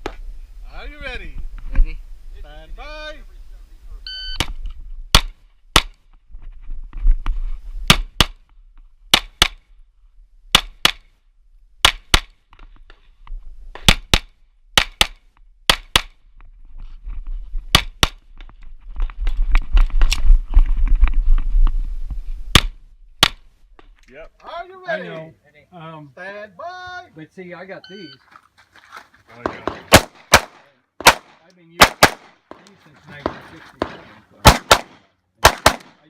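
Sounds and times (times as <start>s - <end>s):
pistol shots: 29.4s - 32.6s, 33.2s - 36.0s.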